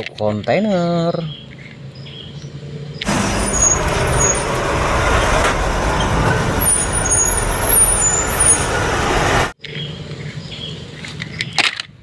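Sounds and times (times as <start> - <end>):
heavy truck engine running: 3.0 - 9.6.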